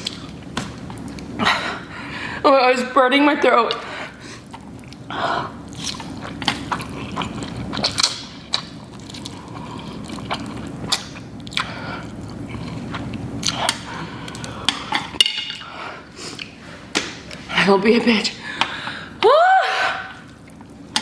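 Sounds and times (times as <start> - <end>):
steady low hum: 0.0 - 21.0
wet mouth eating sounds: 4.4 - 15.2.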